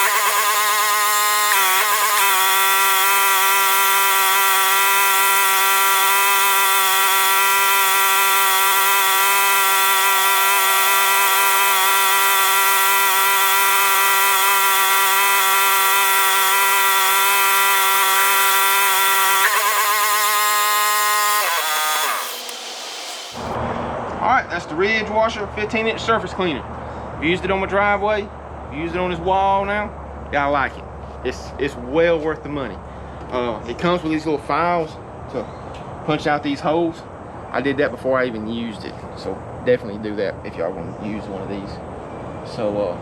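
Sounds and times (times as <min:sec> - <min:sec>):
pressure washer whining: 0:00.0 - 0:23.6.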